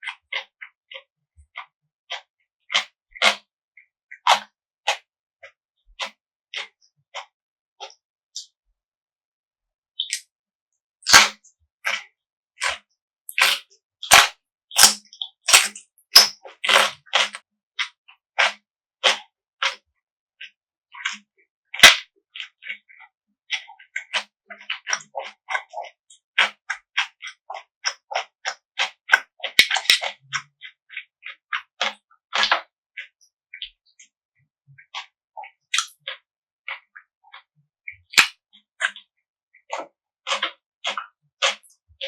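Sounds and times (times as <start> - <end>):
crunchy chewing: 12.6 - 17.4, 40.3 - 41.7.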